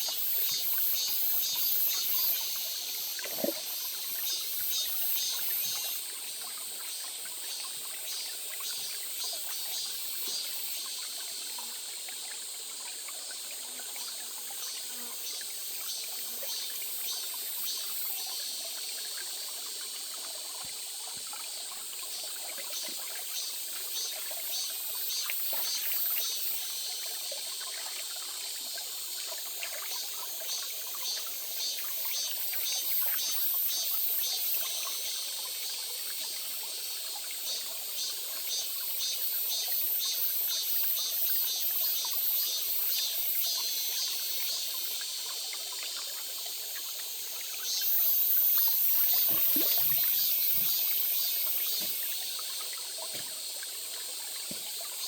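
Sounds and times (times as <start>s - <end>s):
stream trickling and splashing: 0.0s - 55.0s.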